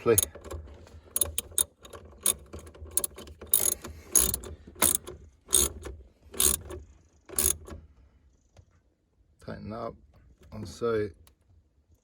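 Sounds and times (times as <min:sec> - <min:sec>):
ratchet wrench clicking: 0:00.0 - 0:00.5, 0:01.1 - 0:07.7.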